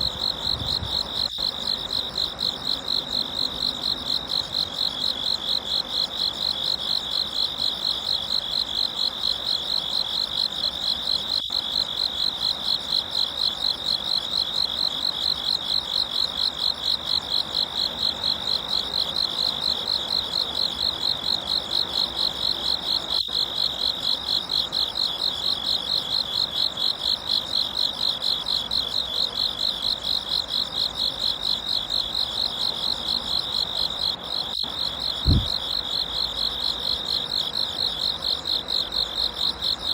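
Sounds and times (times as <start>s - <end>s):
insect pulsing trill: 31.3s - 39.8s.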